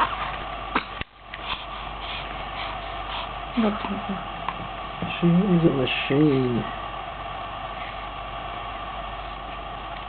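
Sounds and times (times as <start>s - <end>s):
low hum: 0.0s - 10.0s.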